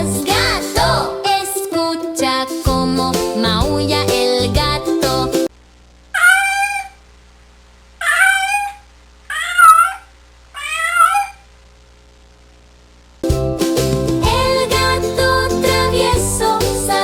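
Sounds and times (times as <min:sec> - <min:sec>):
cat meowing: 0:08.0 - 0:11.4.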